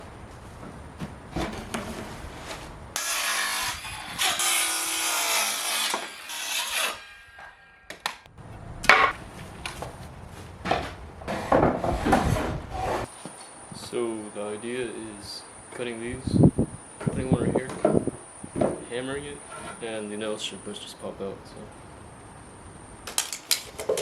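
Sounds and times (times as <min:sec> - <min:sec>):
sawing wood: 0:01.4 - 0:08.2.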